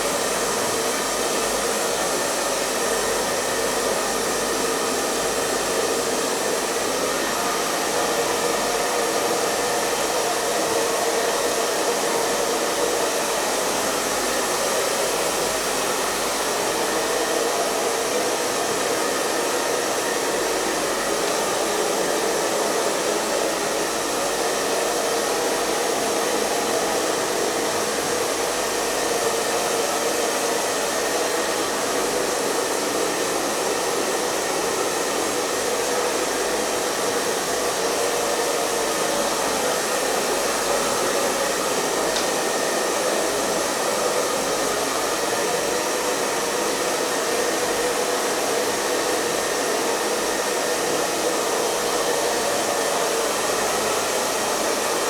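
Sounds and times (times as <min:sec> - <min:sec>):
hair dryer blowing: 0:00.0 - 0:55.0.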